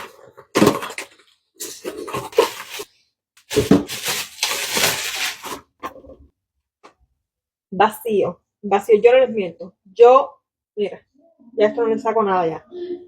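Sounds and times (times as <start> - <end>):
children making vocal sound effects: 11.2 - 13.0.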